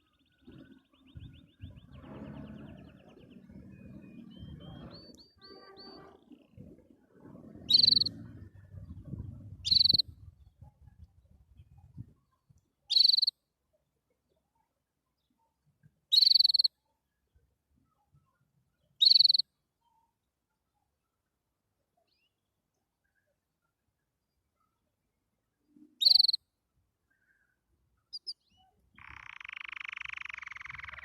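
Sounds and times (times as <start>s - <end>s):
canary trilling and chirping: 0.1s - 6.5s, 7.3s - 10.2s, 12.9s - 13.3s, 16.1s - 16.7s, 19.0s - 19.4s, 26.0s - 26.4s, 28.1s - 31.0s.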